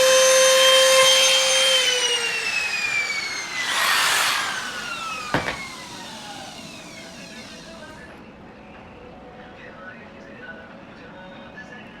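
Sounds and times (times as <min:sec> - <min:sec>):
power tool motor whining: 0:00.0 - 0:08.1.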